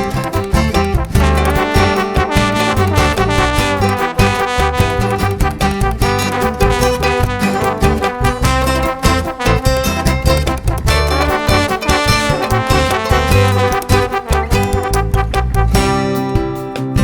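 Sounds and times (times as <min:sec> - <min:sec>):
upbeat brass music over a beat: 0:00.0 - 0:16.9.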